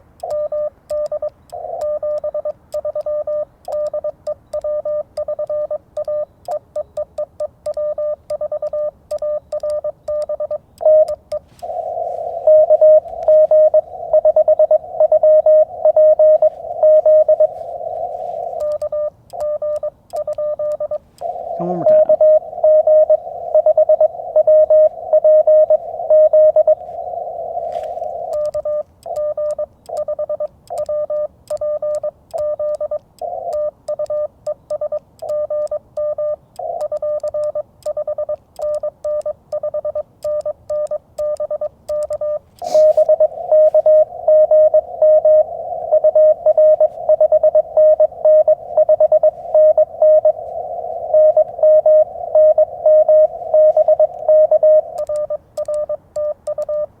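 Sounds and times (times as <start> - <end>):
morse code tones: 0.0 - 57.0
faint clicks: 0.2 - 11.7, 18.0 - 21.4, 28.0 - 43.0, 54.9 - 56.9
radio hiss: 11.0 - 19.4, 20.8 - 28.5, 42.4 - 57.0.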